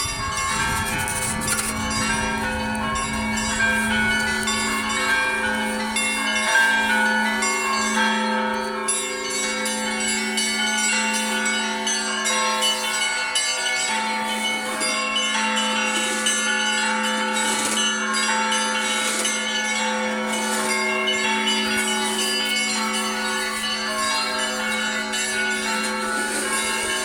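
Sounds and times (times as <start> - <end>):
deep bell tolling: 0.0 - 11.6
church bells ringing: 0.0 - 27.0.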